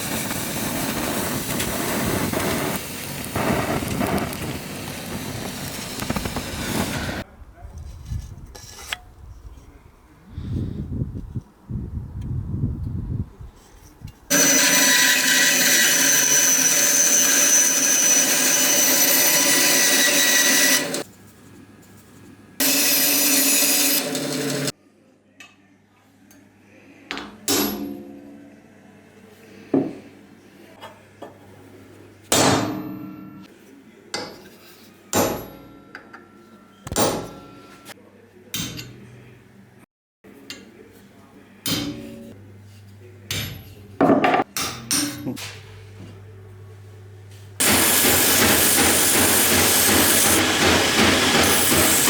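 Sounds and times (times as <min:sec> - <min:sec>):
power tool whining on wood: 0:14.3 - 0:21.0.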